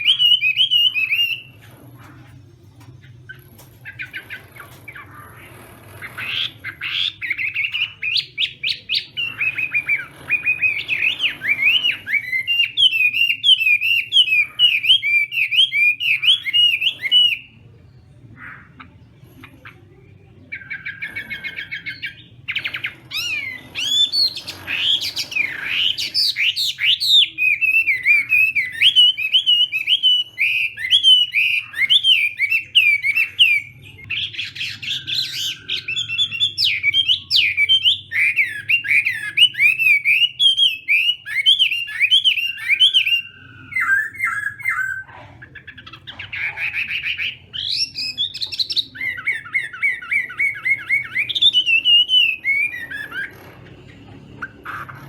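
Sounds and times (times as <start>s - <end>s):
bird singing whistled phrases: 25.4s - 45.1s.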